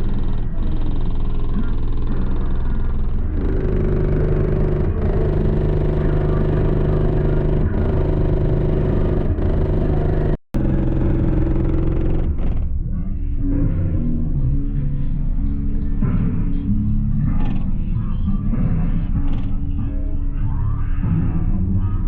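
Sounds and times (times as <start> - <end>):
deep subwoofer bass: 0.0 - 22.0
loud car stereo music: 3.4 - 10.4.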